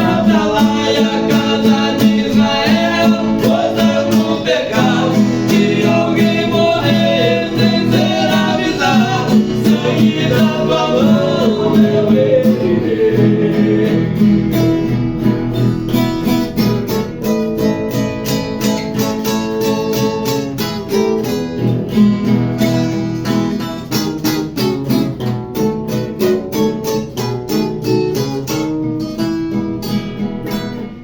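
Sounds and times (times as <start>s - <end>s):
acoustic guitar strumming: 0.0s - 31.0s.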